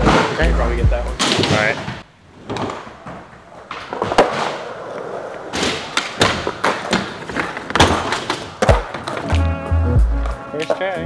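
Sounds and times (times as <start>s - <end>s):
skateboard clacks and knocks: 2.6s - 9.4s
skateboard rolling: 2.6s - 11.0s.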